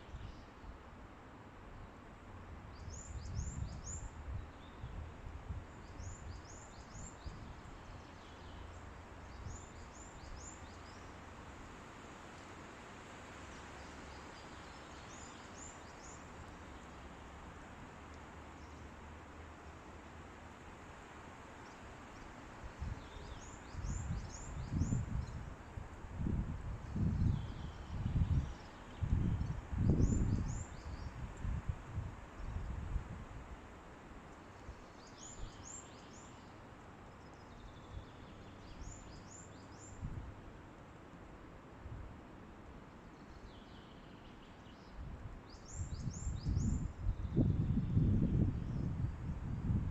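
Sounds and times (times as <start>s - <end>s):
wind through trees: 0.0s - 49.9s
small bird singing: 5.8s - 11.1s, 22.9s - 25.5s, 26.8s - 31.2s, 34.4s - 40.0s, 43.0s - 49.2s.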